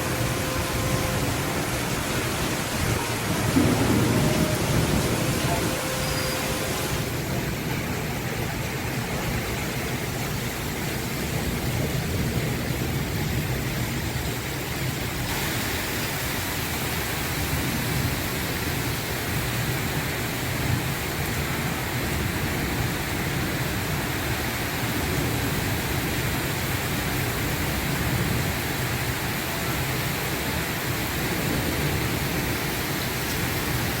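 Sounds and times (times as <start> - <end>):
heavy rain downpour: 0.0 - 34.0.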